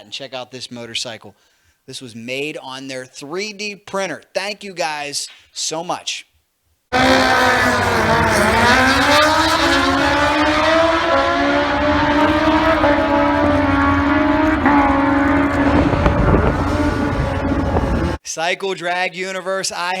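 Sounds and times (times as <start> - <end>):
racing motorcycle engine revving: 6.9 - 18.2.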